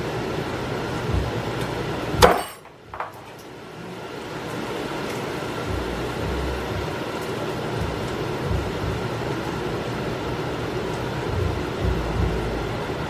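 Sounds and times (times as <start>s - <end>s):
vegetables sizzling in a pan: 3.4s - 13.0s.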